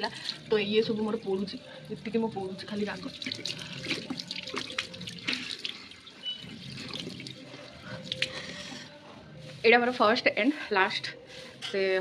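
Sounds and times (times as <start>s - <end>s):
small splashes and drips: 0.0s - 0.5s, 2.6s - 8.6s
water running at a sink: 2.2s - 8.4s.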